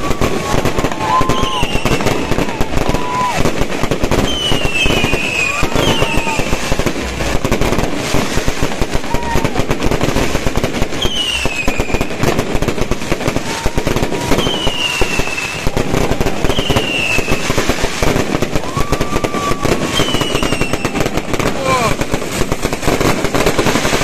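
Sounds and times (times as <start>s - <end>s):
fireworks crackling and popping: 0.0s - 24.0s
high descending whistles: 1.0s - 2.2s, 19.4s - 20.9s.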